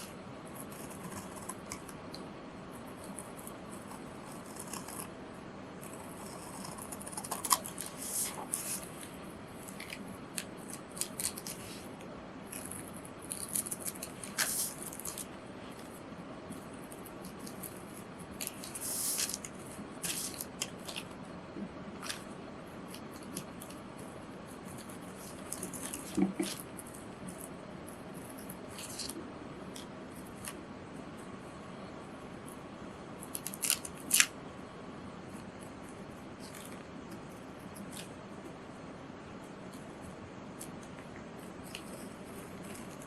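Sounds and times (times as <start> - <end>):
scissors snipping paper: 0.0 - 2.2, 3.0 - 5.2, 5.8 - 11.8, 12.4 - 21.2, 24.6 - 30.6, 33.2 - 34.3
paper rustling: 7.3 - 16.6, 17.4 - 21.2, 28.2 - 29.2.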